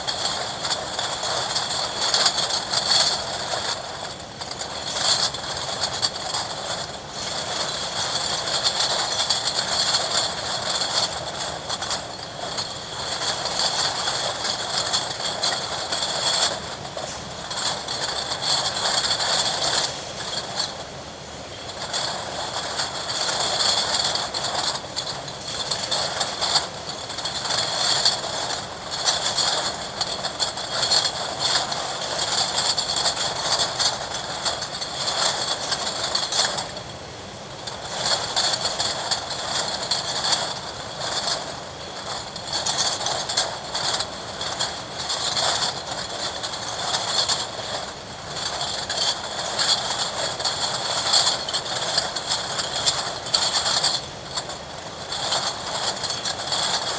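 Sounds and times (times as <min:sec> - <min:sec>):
milk bottles clinking on conveyor: 0:00.1 - 0:20.9, 0:21.5 - 0:37.0.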